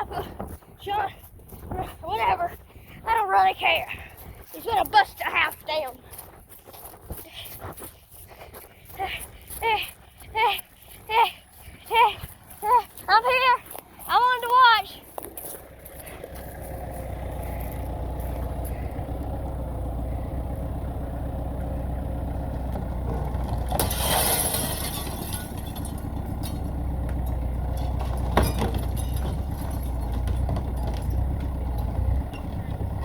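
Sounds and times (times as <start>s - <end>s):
demolition machine engine running: 14.8s - 33.0s
crashing splintering debris: 23.2s - 32.5s.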